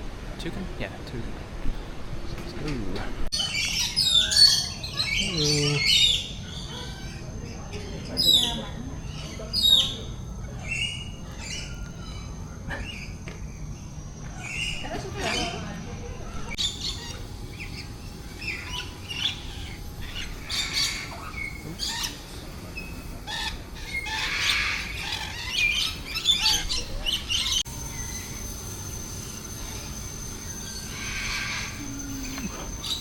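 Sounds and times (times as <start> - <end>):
small birds chirping: 2.6 - 33.0
steady high-pitched tone: 27.7 - 33.0.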